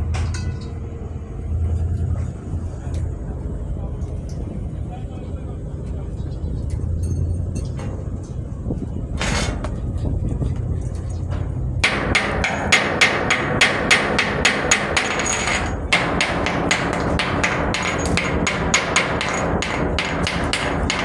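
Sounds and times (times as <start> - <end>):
hammer strikes: 11.8 - 21.0.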